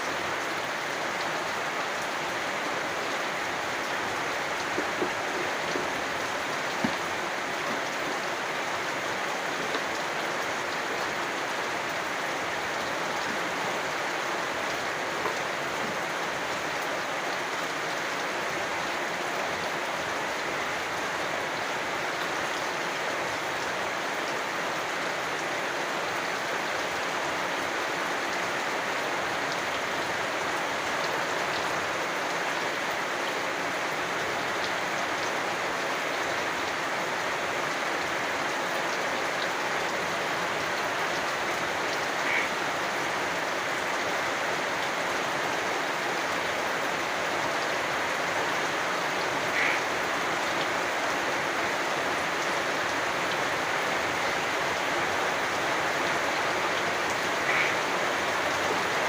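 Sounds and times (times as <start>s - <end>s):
steady rain falling: 0.0s - 59.0s
frog call: 42.1s - 42.7s, 49.4s - 50.0s, 57.3s - 57.9s.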